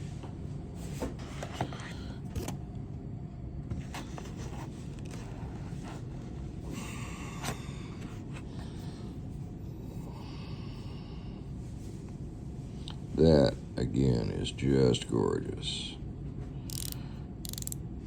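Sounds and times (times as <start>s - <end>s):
low background hum: 0.0s - 18.0s
wrench set clicks: 16.7s - 17.8s.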